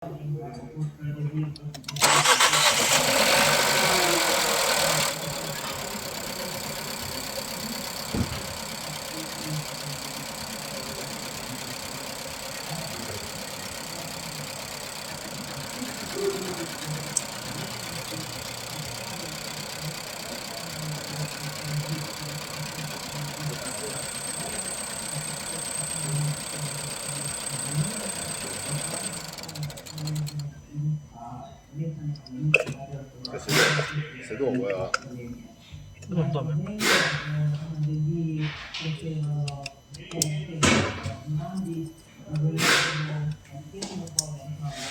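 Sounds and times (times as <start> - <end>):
car engine idling unevenly: 2.0 - 30.2.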